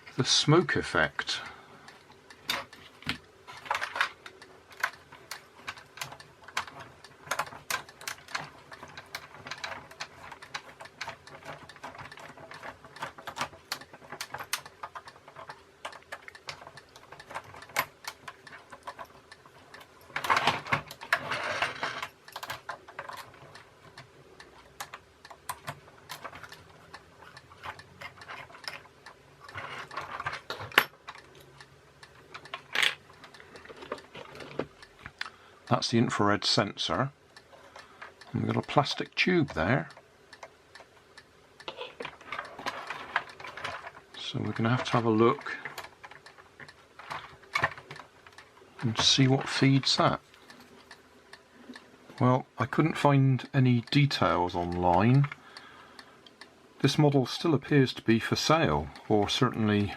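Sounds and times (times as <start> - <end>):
plastic toy parts clicking: 2.1 - 35.3, 37.5 - 51.0.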